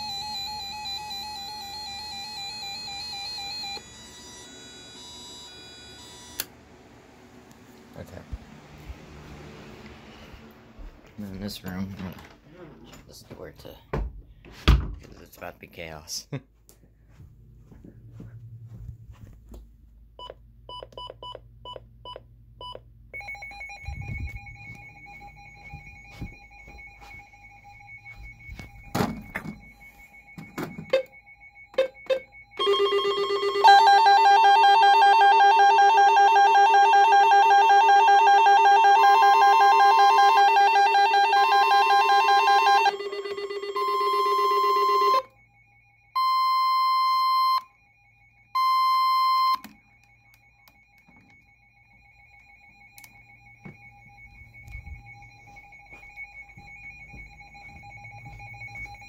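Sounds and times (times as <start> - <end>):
alarm tones blaring together: 0.0 - 6.5, 23.2 - 59.0
on-off beeping tone: 20.2 - 45.3, 48.5 - 51.4.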